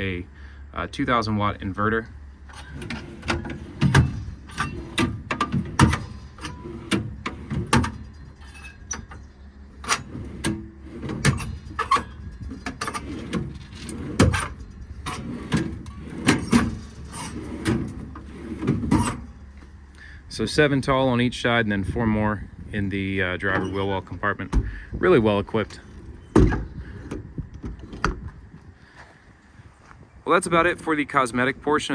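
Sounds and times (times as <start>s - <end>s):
tool drawers clicking and knocking: 2.5s - 19.4s, 25.6s - 28.4s.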